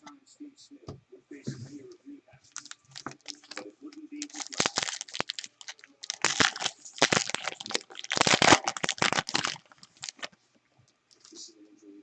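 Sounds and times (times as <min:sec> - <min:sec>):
wrapper crinkling and tearing: 0:02.5 - 0:10.3.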